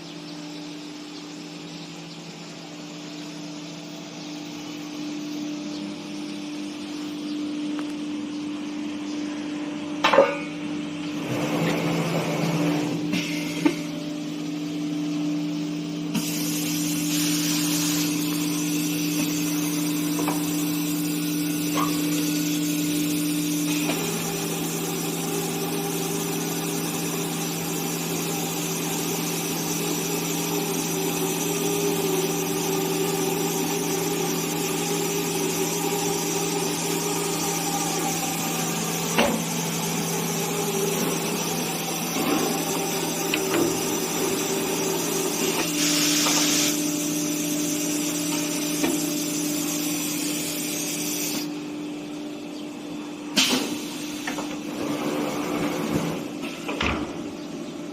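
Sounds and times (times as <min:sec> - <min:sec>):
router machine whine: 0:23.6 - 0:46.4.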